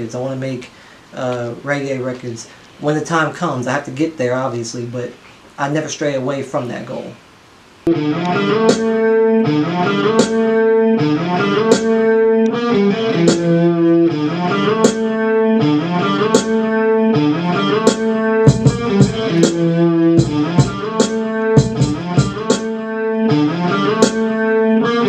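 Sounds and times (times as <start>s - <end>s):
looped guitar phrase: 7.9s - 25.0s
heavy low drums: 13.2s - 22.8s.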